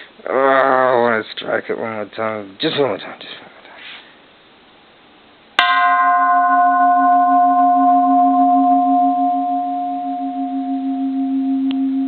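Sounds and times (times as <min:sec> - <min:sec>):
temple bell struck and ringing: 0:05.6 - 0:12.0.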